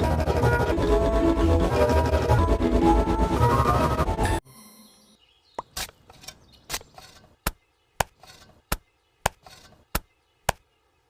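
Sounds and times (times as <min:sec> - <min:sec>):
garden tool chopping soil: 0:05.6 - 0:10.6.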